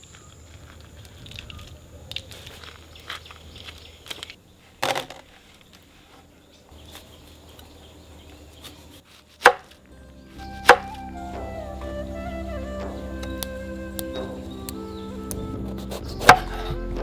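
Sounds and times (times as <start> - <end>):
soft melodic background music: 9.8 - 17.0.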